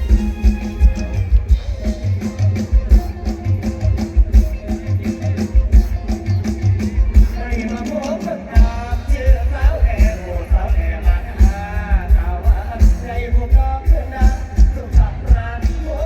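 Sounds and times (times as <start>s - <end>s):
plucked guitar-like melody: 0.0s - 7.9s
bass: 0.0s - 16.0s
drum kit beat: 0.0s - 16.0s.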